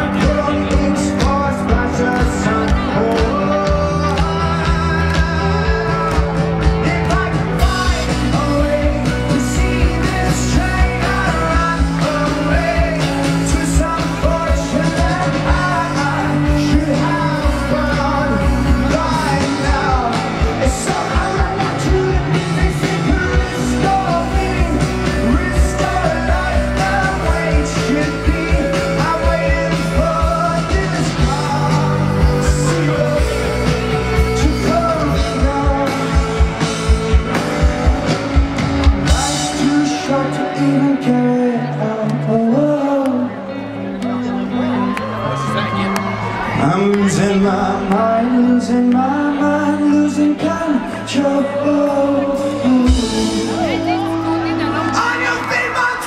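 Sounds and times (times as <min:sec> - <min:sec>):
drum beat: 0:00.0 - 0:39.8
person singing: 0:00.0 - 0:45.4, 0:46.2 - 0:56.0
bass: 0:00.0 - 0:56.0
guitars: 0:00.0 - 0:56.0.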